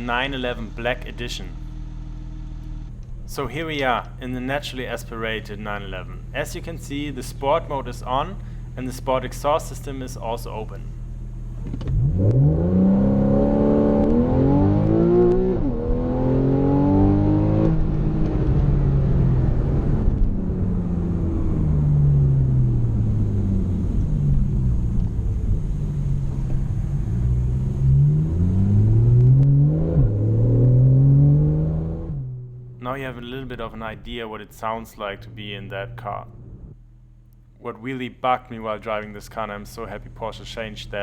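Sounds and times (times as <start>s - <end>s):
car engine revving through gears: 11.5s - 32.8s.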